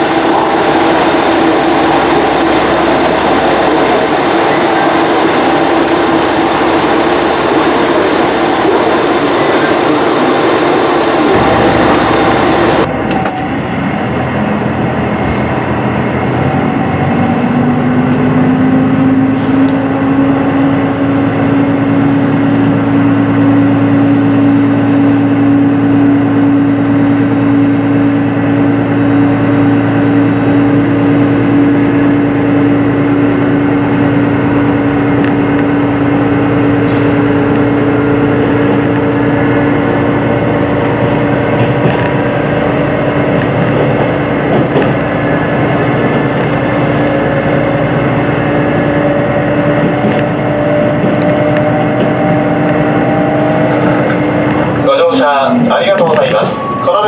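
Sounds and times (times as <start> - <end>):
diesel train engine humming: 0.0 - 57.0
train running rumble: 0.0 - 57.0.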